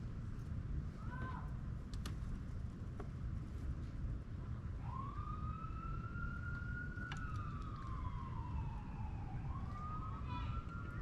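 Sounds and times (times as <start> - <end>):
emergency siren wailing: 4.8 - 11.0.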